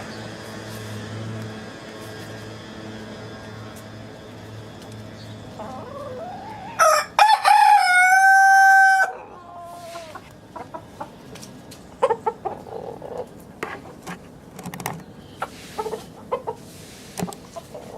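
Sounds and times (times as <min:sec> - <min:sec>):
hens clucking softly: 0:05.6 - 0:06.8, 0:09.0 - 0:14.0, 0:15.4 - 0:17.9
rooster crowing: 0:05.6 - 0:10.2.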